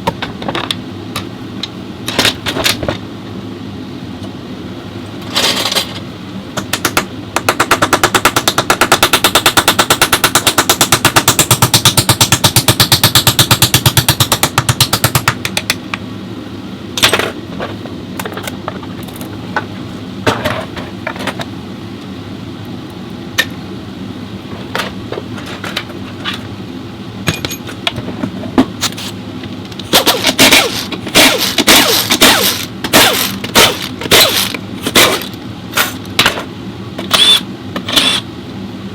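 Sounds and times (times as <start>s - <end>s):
pneumatic impact wrench hammering: 6.6s - 15.4s, 29.8s - 36.3s, 37.0s - 38.2s
tools and parts knocking: 27.2s - 28.3s.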